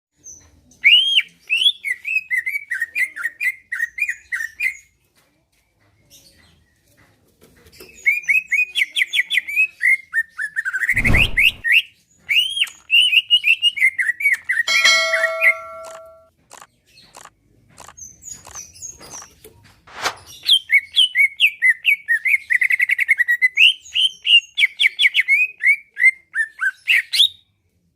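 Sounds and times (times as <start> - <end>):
low rustle or thump: 11.0 - 11.6.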